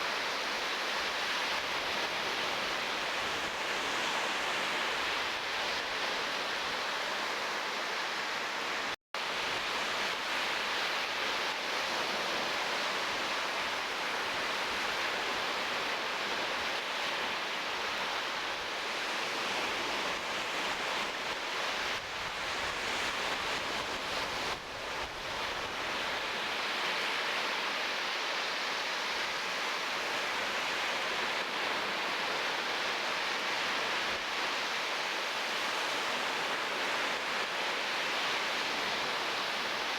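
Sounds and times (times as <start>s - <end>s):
surf rushing on shore: 0.0s - 39.9s.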